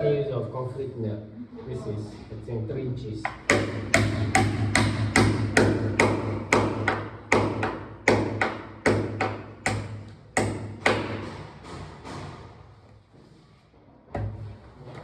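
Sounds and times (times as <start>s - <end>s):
hammer driving nail into wall: 3.3s - 12.8s.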